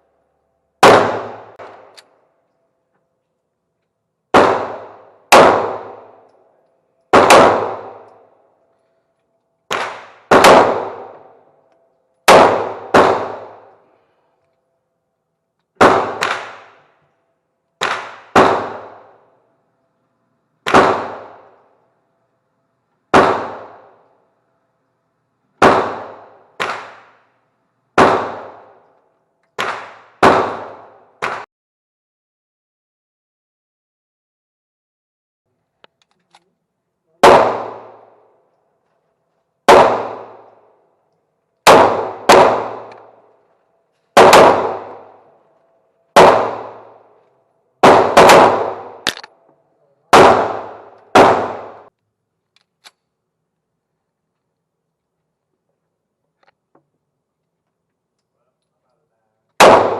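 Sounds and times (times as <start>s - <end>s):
gunshots: 0.8s - 2.0s, 4.3s - 6.3s, 7.1s - 8.2s, 9.7s - 11.4s, 12.2s - 13.8s, 15.8s - 17.0s, 17.8s - 19.3s, 20.6s - 21.6s, 23.1s - 24.0s, 25.6s - 27.3s, 27.9s - 28.9s, 29.6s - 31.5s, 37.2s - 38.3s, 39.6s - 40.6s, 41.6s - 43.4s, 44.1s - 45.4s, 46.1s - 47.2s, 47.8s - 49.4s, 50.1s - 51.9s, 59.6s - 59.9s.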